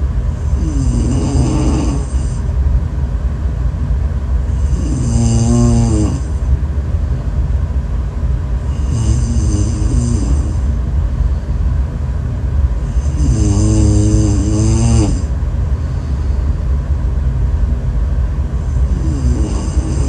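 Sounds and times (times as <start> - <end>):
steady low rumble: 0.0 - 20.0
person snoring: 0.4 - 2.4, 4.5 - 6.3, 8.7 - 10.8, 12.9 - 15.3, 18.6 - 20.0.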